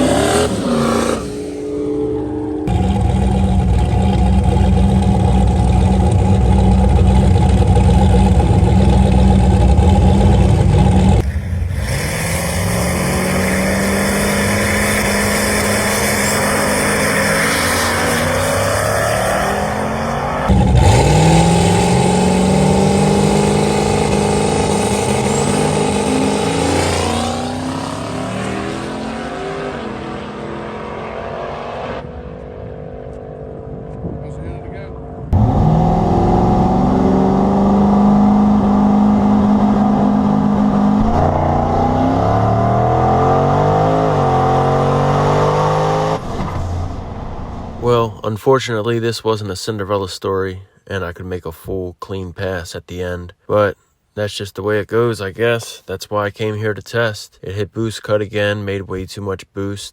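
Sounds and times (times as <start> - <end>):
race car engine accelerating: 0.0 - 47.8.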